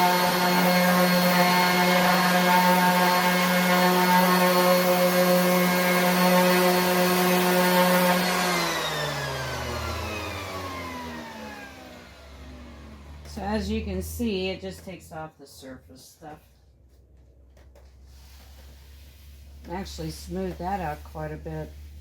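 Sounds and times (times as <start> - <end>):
motor winding down: 0.0 - 13.3
orbit sander sanding wood: 0.0 - 13.6.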